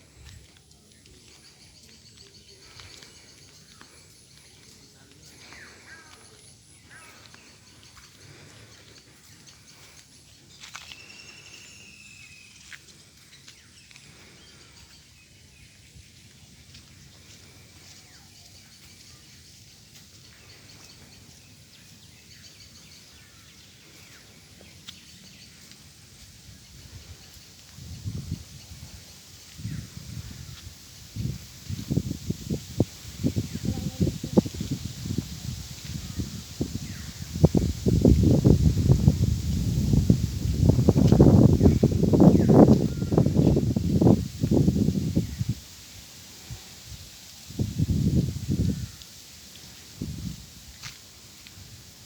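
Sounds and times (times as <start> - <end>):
bird calls: 1.0 - 15.4.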